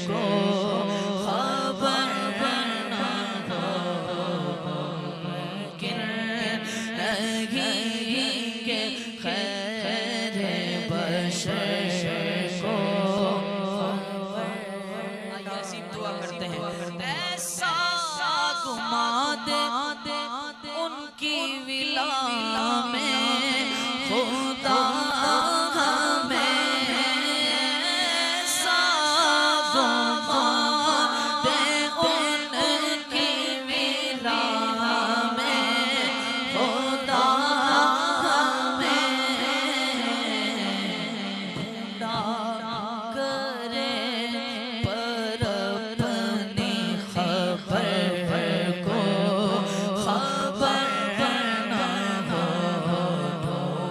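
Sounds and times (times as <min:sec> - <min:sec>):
person singing ornamented melody: 0:00.0 - 0:53.9.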